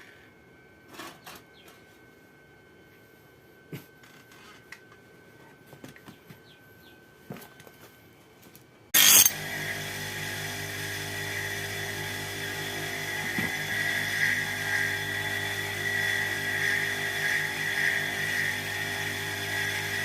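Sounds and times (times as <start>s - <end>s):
power tool humming and whining: 9.0s - 20.0s.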